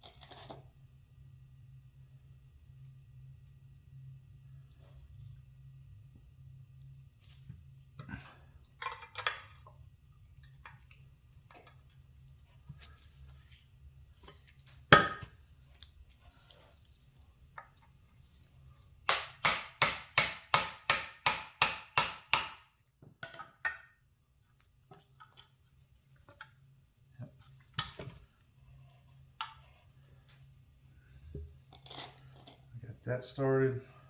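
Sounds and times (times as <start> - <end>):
hammer tapping metal: 19.1 - 22.6.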